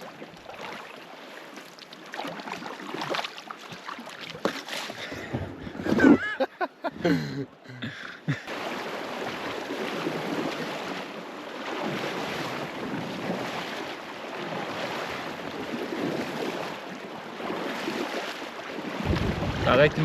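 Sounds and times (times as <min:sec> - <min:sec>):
water splashing around kayak: 0:00.0 - 0:20.0
wind buffeting microphone: 0:19.0 - 0:20.0.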